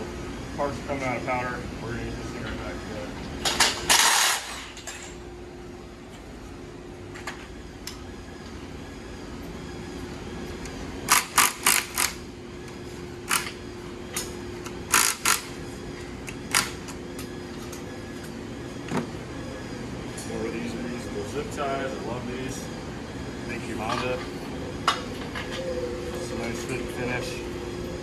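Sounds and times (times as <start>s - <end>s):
steady low hum: 0.0s - 28.0s
hand tools clicking on parts: 10.6s - 12.2s, 13.3s - 15.6s.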